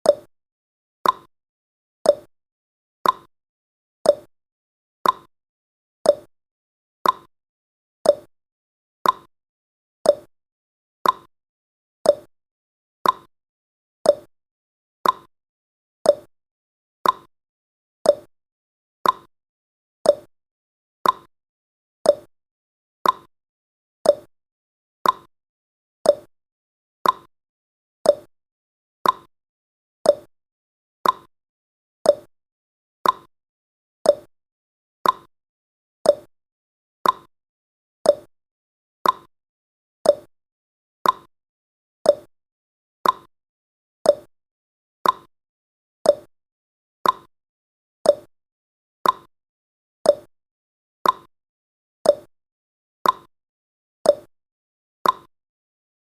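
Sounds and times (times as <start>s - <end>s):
clock ticking: 27.0s - 27.3s, 31.0s - 31.3s, 35.0s - 35.3s, 37.0s - 37.3s, 39.0s - 39.3s, 43.0s - 43.3s, 47.0s - 47.3s, 55.0s - 55.3s.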